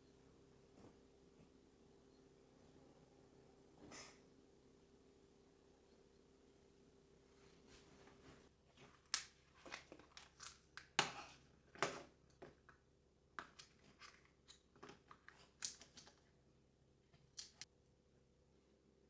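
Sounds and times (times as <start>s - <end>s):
small crinkles snips and clicks: 9.0s - 11.2s, 17.2s - 17.7s.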